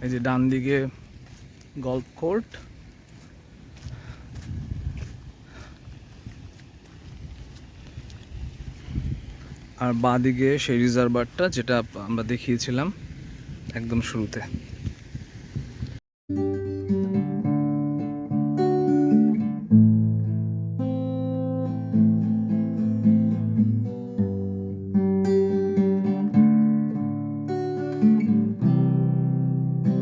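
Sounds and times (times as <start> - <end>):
acoustic guitar strumming: 16.3 - 30.0.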